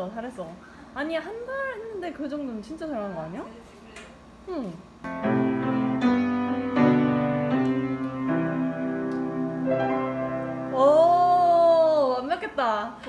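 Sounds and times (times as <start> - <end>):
piano playing slow chords: 5.0 - 11.9.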